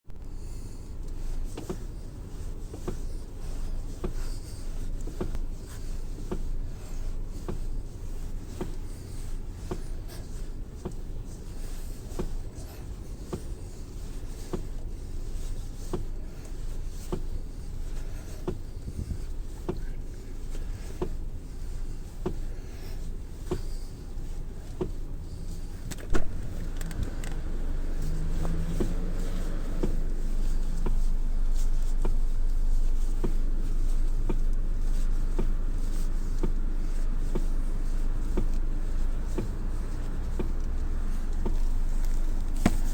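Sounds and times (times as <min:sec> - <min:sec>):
low steady hum: 0:00.1 - 0:42.9
loud thump: 0:26.1 - 0:26.5.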